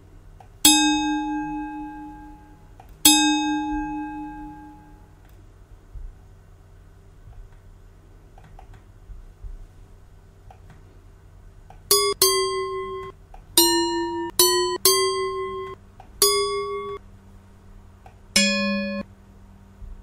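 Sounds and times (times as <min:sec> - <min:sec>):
sampled notes at different pitches: 0:00.6 - 0:05.2, 0:11.9 - 0:17.0, 0:18.3 - 0:19.1.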